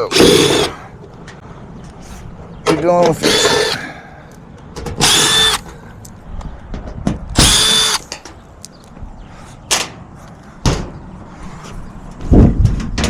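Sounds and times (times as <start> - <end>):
cordless drill whirring: 0.1 - 0.7, 3.2 - 3.8, 5.0 - 5.6, 7.4 - 8.0.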